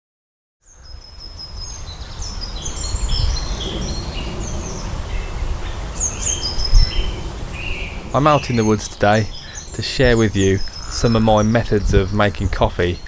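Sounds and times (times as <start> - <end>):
songbirds chirping and trilling: 0.6 - 13.0
steady low rumble: 2.9 - 13.0.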